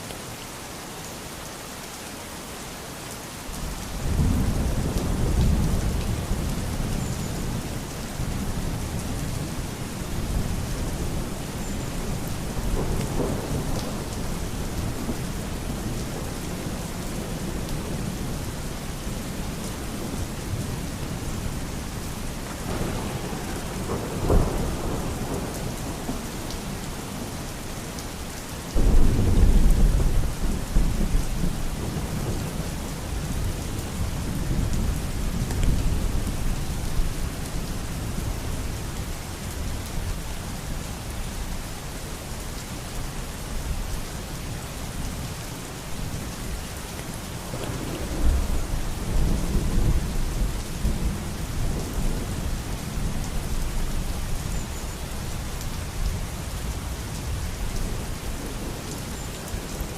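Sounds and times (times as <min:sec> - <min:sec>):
steady rain: 0:00.0 - 0:59.9
thunder rumbling: 0:22.6 - 0:27.5, 0:28.8 - 0:36.3, 0:47.5 - 0:53.4.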